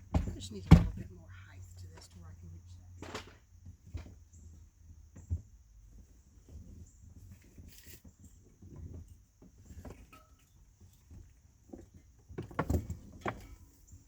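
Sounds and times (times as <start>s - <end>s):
light knocks and rustling: 0.0s - 1.1s, 3.0s - 14.0s
low steady rumble: 0.0s - 7.5s.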